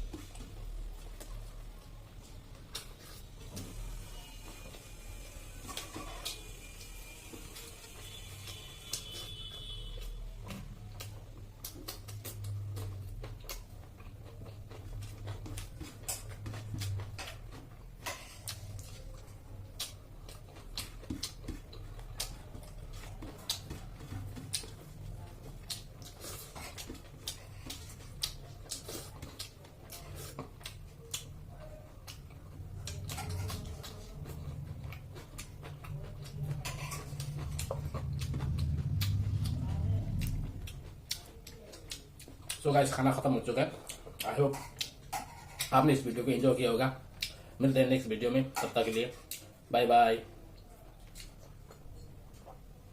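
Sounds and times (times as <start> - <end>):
chewing and lip-smacking: 0.1 - 3.3, 4.5 - 45.8, 47.1 - 47.5, 48.7 - 49.7, 50.5 - 52.9.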